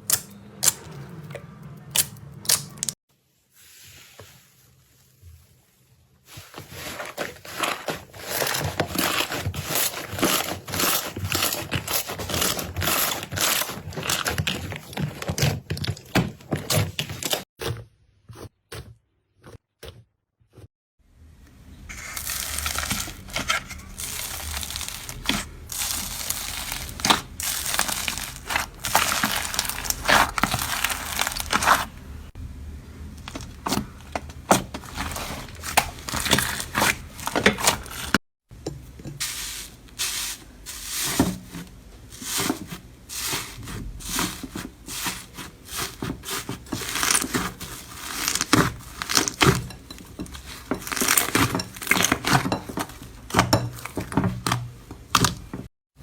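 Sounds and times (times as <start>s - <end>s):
slime tearing and crinkling: 6.4s - 16.0s, 21.9s - 32.0s, 34.6s - 38.2s, 42.2s - 49.7s, 50.3s - 54.1s.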